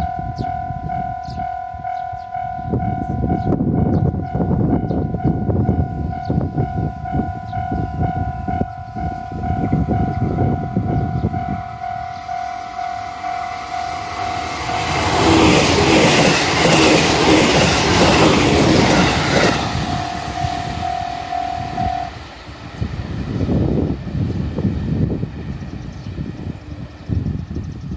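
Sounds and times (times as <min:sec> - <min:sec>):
crossing warning bell: 0:00.0 - 0:22.9
rush of train noise: 0:00.0 - 0:27.9
train wheels clacking: 0:13.4 - 0:22.1.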